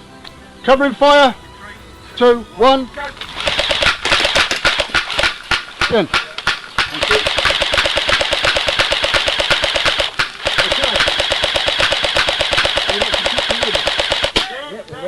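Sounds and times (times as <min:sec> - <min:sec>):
airsoft gun automatic fire: 0:03.2 - 0:14.6.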